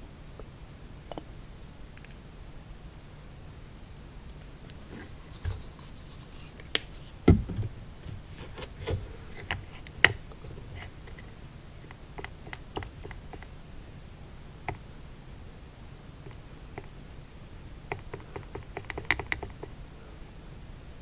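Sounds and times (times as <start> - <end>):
brush rubbing paint: 4.6 - 11.4.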